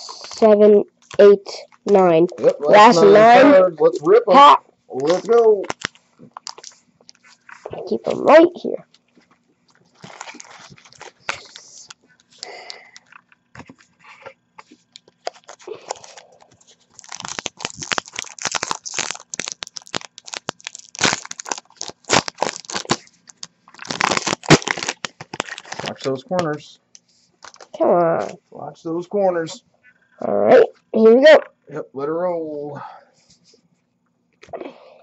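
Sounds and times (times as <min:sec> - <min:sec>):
foil wrapper crinkling: 0:05.0 - 0:08.0, 0:08.9 - 0:27.8.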